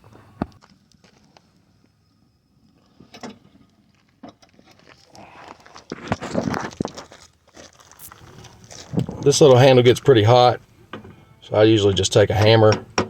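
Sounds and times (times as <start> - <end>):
clattering with sharp knocks: 12.7 - 13.0.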